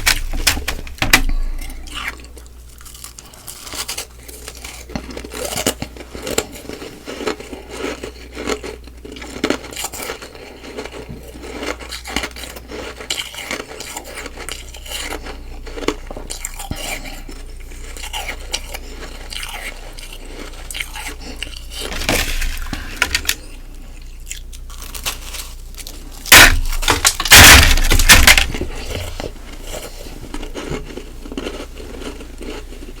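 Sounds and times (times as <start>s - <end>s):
chewing crunchy ice: 0.0s - 33.0s.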